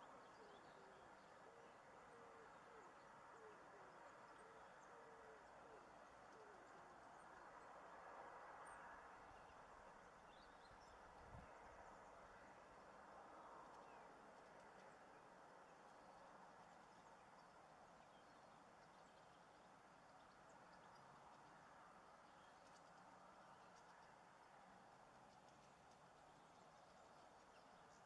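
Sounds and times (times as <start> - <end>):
pigeon cooing softly: 0.3 - 7.0.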